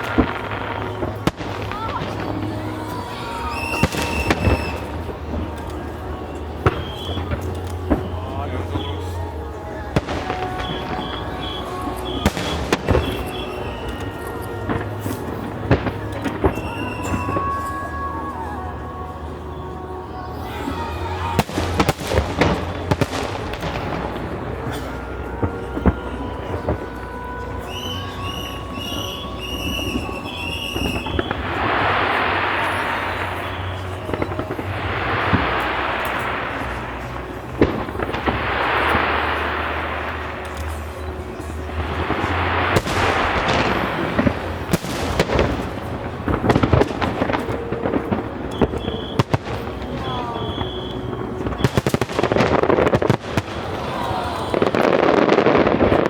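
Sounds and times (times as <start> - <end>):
fireworks bursting: 0.0 - 56.0.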